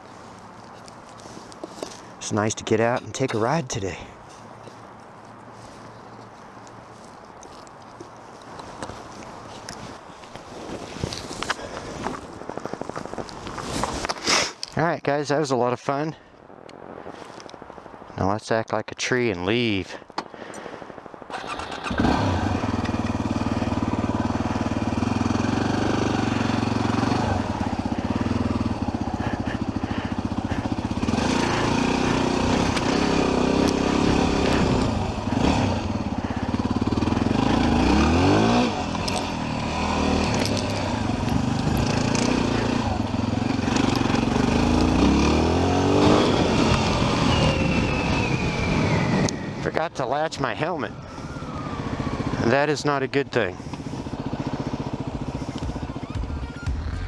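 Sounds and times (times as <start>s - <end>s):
motorcycle engine revving: 21.3s - 49.6s, 51.0s - 57.0s.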